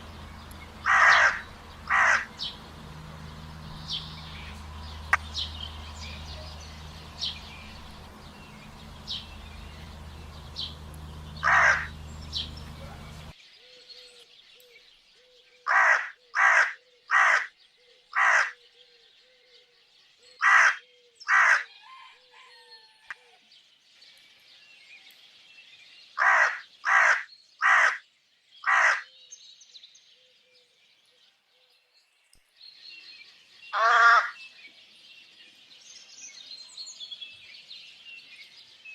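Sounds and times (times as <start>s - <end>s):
crows cawing: 0.0s - 2.6s, 10.6s - 13.3s, 15.7s - 18.6s, 20.4s - 22.2s, 26.2s - 28.0s, 28.6s - 29.2s, 33.7s - 34.5s
small birds chirping: 0.0s - 38.9s.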